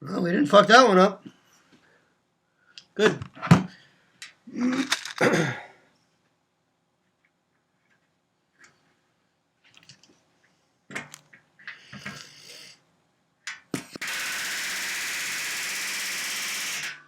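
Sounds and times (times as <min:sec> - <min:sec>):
pneumatic rivet gun rattling: 0:04.8 - 0:05.2, 0:13.8 - 0:17.0.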